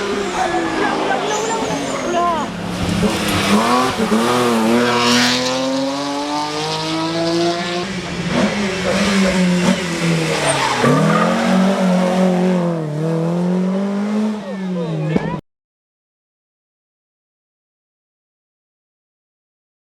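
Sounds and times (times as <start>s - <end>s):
rally car engine revving: 0.0s - 15.4s.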